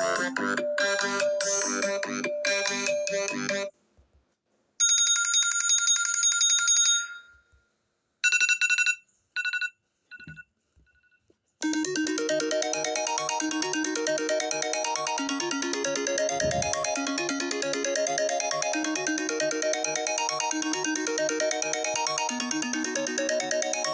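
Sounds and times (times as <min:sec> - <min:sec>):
melodic phone ringtone: 0:00.0 - 0:03.7, 0:11.6 - 0:23.9
bright bell-like tone: 0:16.2 - 0:17.1.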